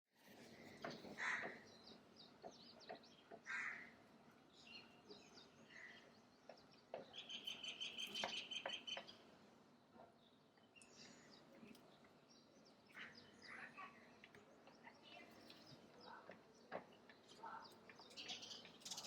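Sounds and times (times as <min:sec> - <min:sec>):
birds chirping and calling: 0:17.6 - 0:19.0.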